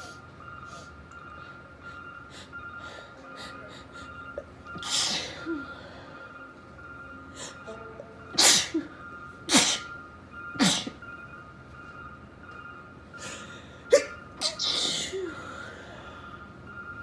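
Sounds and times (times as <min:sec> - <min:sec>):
person sneezing: 0:08.4 - 0:08.9, 0:09.5 - 0:09.9.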